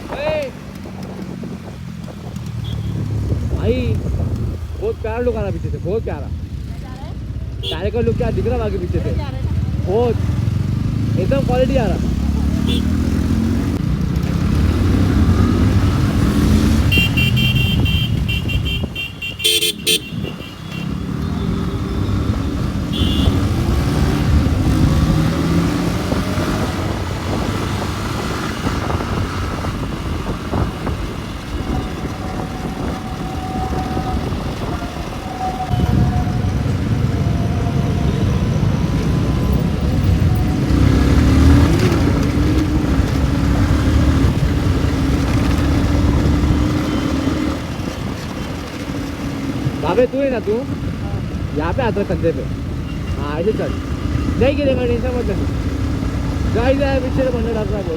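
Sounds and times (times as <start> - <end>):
motorcycle engine: 0.0 - 57.9
road rumble: 0.0 - 57.9
vehicle horn honking: 2.6 - 3.0, 7.6 - 7.9, 12.6 - 13.1, 16.8 - 22.1, 22.8 - 23.8, 35.7 - 36.7.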